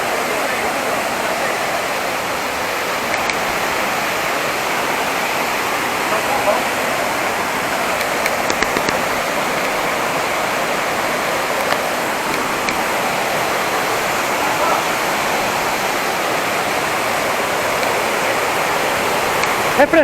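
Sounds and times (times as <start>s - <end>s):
waterfall rushing: 0.0s - 20.0s
light clicks: 3.1s - 3.5s, 7.9s - 10.0s, 11.4s - 12.9s, 19.3s - 19.8s.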